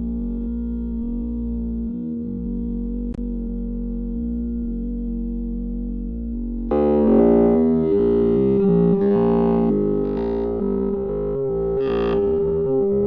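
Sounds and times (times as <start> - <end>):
synthesizer keyboard music: 6.7 - 13.0.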